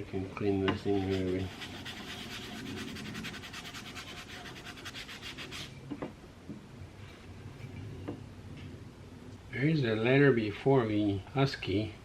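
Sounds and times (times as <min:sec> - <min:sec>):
metal blade scrubbed by hand: 0:00.8 - 0:05.7.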